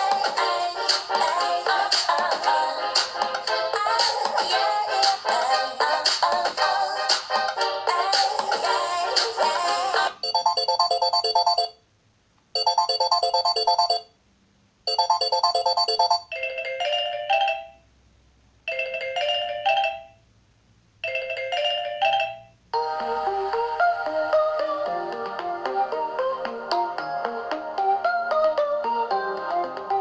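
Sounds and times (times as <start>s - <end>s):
electronic ringtone melody: 10.2s - 11.8s, 12.6s - 14.1s, 14.9s - 17.8s, 18.7s - 20.2s, 21.0s - 25.2s.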